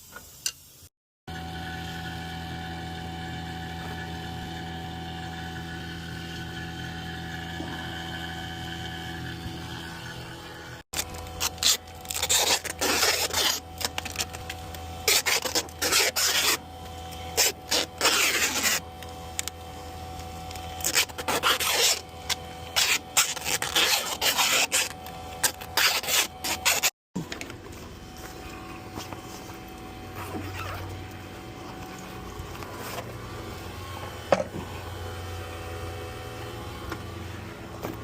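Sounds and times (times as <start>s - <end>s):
tool rasping and scraping: 3.6s - 27.0s.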